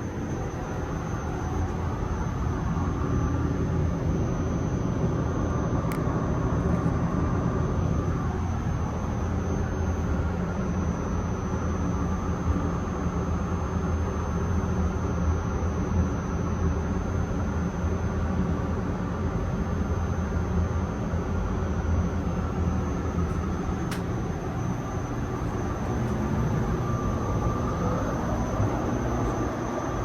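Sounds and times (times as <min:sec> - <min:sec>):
electric train rumbling on track: 0:00.0 - 0:12.1, 0:21.7 - 0:30.0
faint whine: 0:00.0 - 0:13.5, 0:21.6 - 0:30.0
sharp click: 0:23.3 - 0:24.2.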